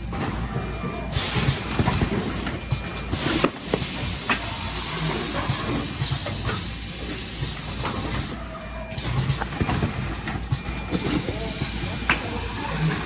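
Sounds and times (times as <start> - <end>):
packaging machine hum: 0.0 - 13.0
machine hiss: 1.1 - 13.0.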